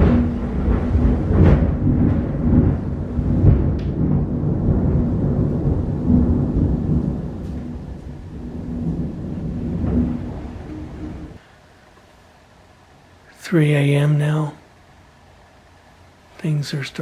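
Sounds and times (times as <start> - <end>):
rolling thunder: 0.0 - 11.4
heavy rain: 0.0 - 17.0.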